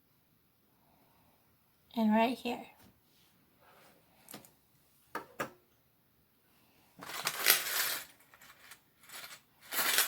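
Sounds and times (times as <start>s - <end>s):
crackling rustling handling noise: 7.0s - 10.0s.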